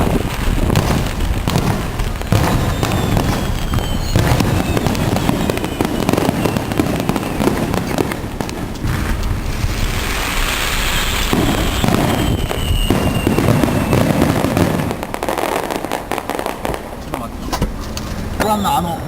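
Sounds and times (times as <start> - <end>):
firework shells bursting and crackling: 0.0 - 18.5
faint falling whistles: 2.3 - 7.5, 10.4 - 14.2.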